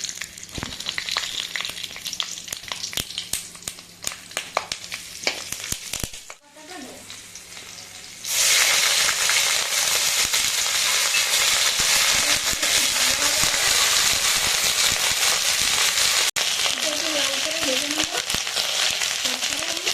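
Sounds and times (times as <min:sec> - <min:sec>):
hot oil crackling: 0:00.0 - 0:19.9
oil sizzling loudly: 0:00.0 - 0:19.9.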